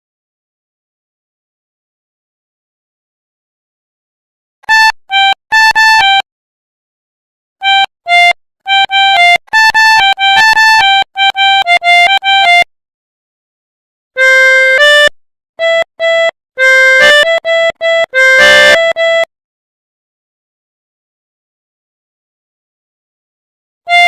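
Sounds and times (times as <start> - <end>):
melodica playing clipped notes: 4.6 - 6.2, 7.6 - 12.7, 14.2 - 19.3.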